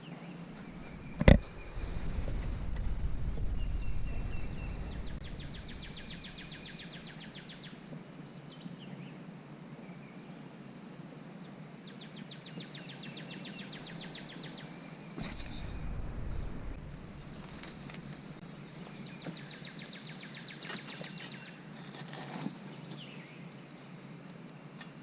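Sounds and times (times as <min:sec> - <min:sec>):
low rumble: 0:00.6 - 0:06.8, 0:15.2 - 0:18.6
songbird singing trills: 0:03.4 - 0:07.8, 0:11.8 - 0:16.3, 0:18.6 - 0:21.7.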